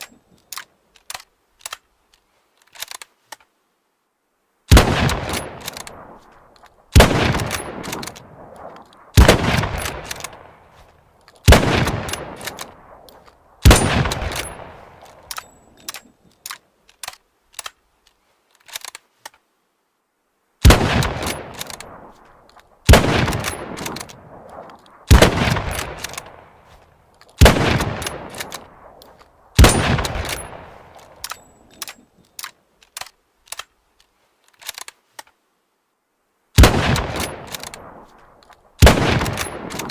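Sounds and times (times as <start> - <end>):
rifle bolt metallic clicks: 0.0 - 3.6, 4.7 - 19.4, 20.6 - 35.4, 36.6 - 39.9
rifle shots with echoing tail: 4.7 - 10.8, 11.5 - 15.6, 20.6 - 26.8, 27.4 - 31.6, 36.6 - 39.9.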